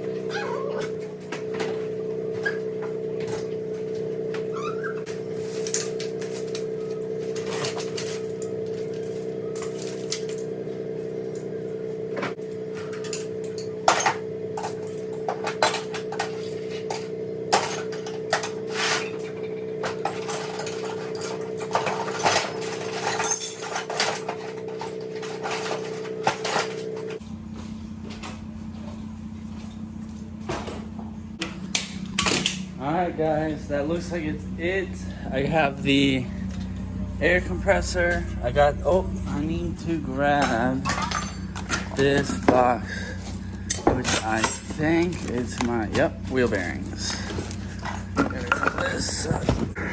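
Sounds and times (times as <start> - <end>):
mechanical hum: 0.0 - 49.9
metal tools clinking: 0.8 - 10.6, 12.6 - 27.2, 40.4 - 49.7.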